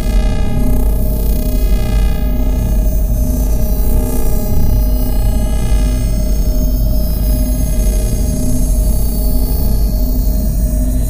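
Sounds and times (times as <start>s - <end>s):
deep synthesized rumble: 0.0s - 11.0s
steady held synth tones: 3.2s - 7.4s
slow throb: 3.4s - 6.9s.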